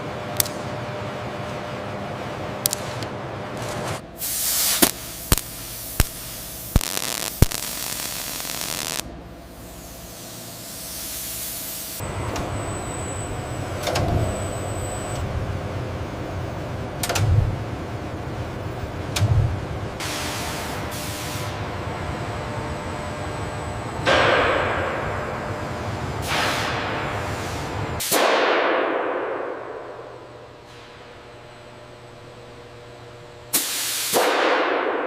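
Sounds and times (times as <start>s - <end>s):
low mechanical rumble: 0.0s - 28.0s, 29.0s - 33.6s
thin high whine: 4.2s - 15.3s.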